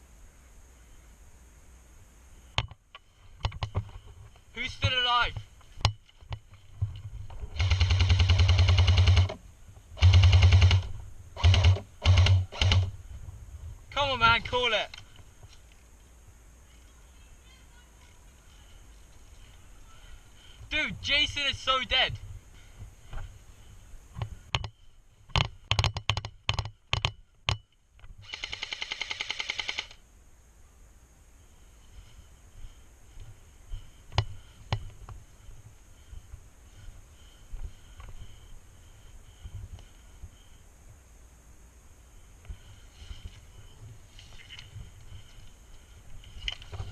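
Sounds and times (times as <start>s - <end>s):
airsoft gun firing full auto: 7.5s - 9.4s, 10.0s - 12.9s, 28.2s - 30.0s.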